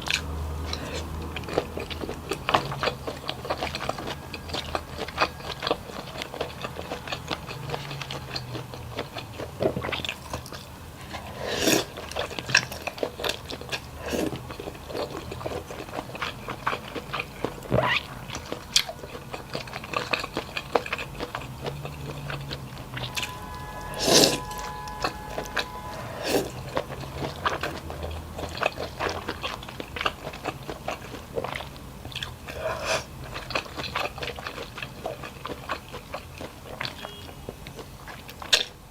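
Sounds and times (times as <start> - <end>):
person chewing and biting: 0.0 - 23.1.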